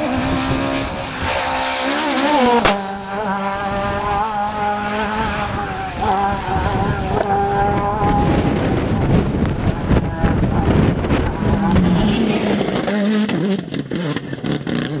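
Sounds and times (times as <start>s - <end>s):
rally car engine revving: 0.0s - 15.0s
sharp crack: 1.5s - 4.2s.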